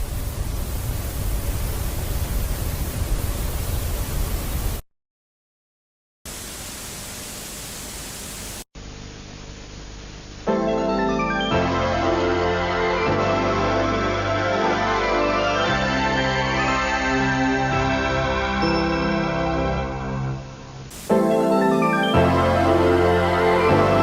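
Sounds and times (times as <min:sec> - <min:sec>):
static hiss: 0:00.0 - 0:04.8, 0:06.3 - 0:15.5, 0:19.3 - 0:24.0
faint steady hum: 0:06.3 - 0:10.7.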